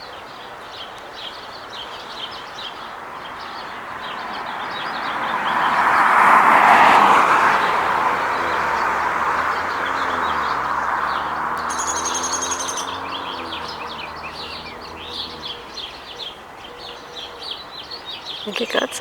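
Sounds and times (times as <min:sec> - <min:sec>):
small birds chirping: 0:00.0 - 0:19.0
passing vehicle: 0:01.8 - 0:19.0
bird trill: 0:08.3 - 0:19.0.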